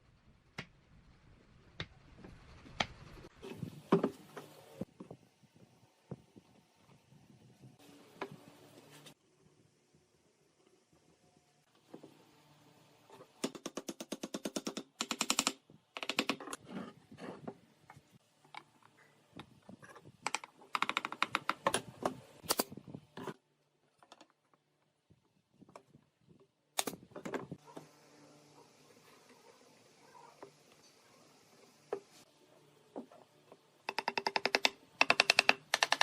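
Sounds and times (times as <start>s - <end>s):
rapid clicking bursts: 33.9s - 36.0s.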